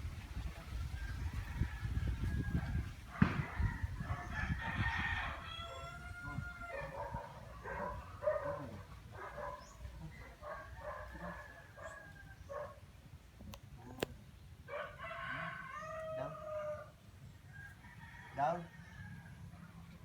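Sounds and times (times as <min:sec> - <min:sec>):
rooster crowing: 0:00.9 - 0:08.0, 0:14.7 - 0:19.5.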